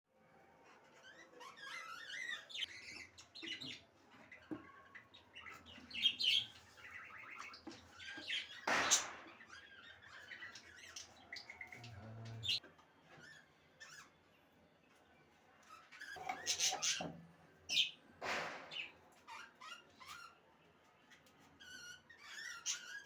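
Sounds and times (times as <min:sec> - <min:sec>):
budgerigars chattering and warbling: 0:01.0 - 0:12.6, 0:16.0 - 0:17.1.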